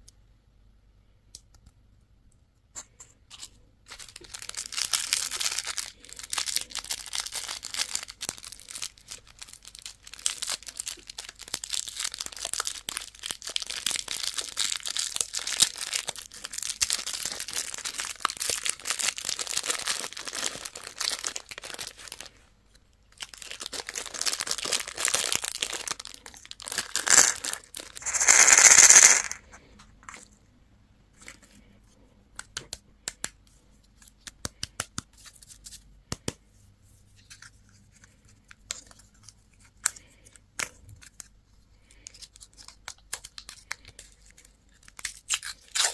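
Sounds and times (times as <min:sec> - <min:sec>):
plastic wrappers crinkling: 0:03.9 - 0:22.3, 0:23.1 - 0:29.5.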